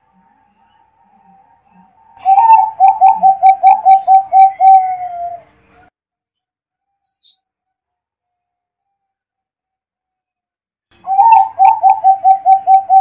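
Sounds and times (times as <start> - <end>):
dove cooing: 2.2 - 5.5, 11.0 - 13.0.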